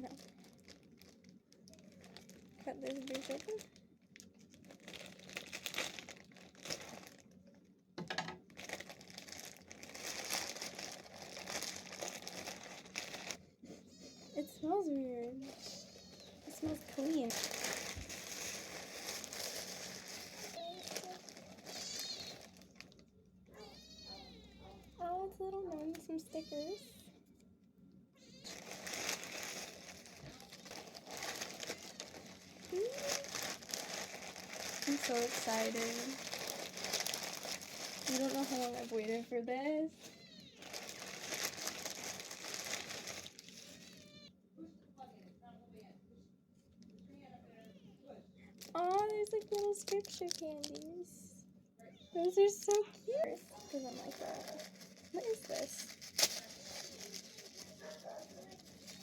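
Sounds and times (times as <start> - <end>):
wrapping crinkling: 0.0 - 7.4, 8.4 - 13.4, 14.0 - 27.0, 28.2 - 44.3, 48.5 - 51.1, 52.2 - 59.0
package being cut and torn: 53.6 - 59.0.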